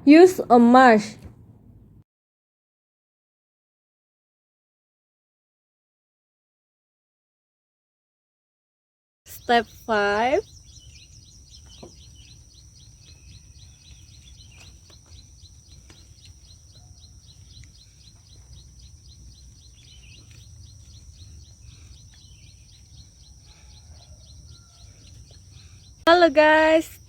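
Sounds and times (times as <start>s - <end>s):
low hum: 9.3s - 27.0s.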